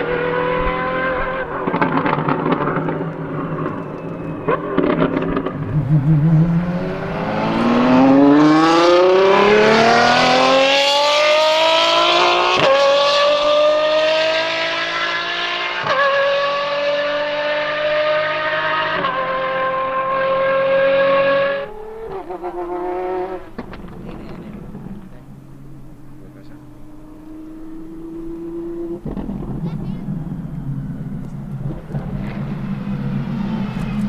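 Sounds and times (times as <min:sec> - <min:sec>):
car engine revving at speed: 0:00.0 - 0:34.0
exhaust crackles and pops: 0:00.6 - 0:07.7, 0:22.1 - 0:34.0.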